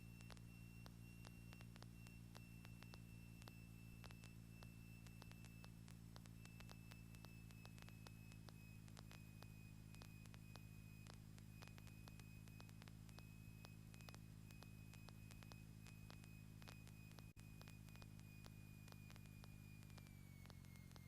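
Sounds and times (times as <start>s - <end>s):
faint clicks: 0.0s - 21.0s
faint low hum with hiss: 0.0s - 21.0s.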